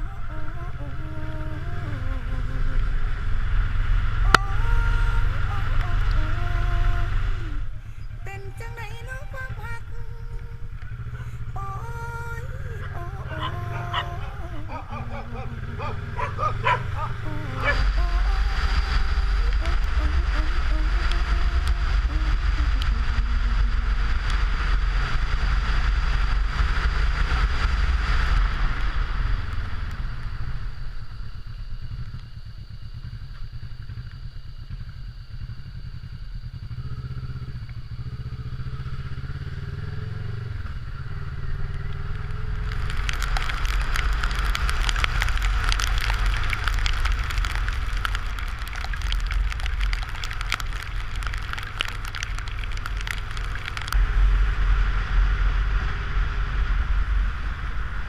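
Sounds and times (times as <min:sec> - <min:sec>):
motorcycle engine running: 0:00.0 - 0:58.0
loud rushing noise: 0:42.5 - 0:58.0.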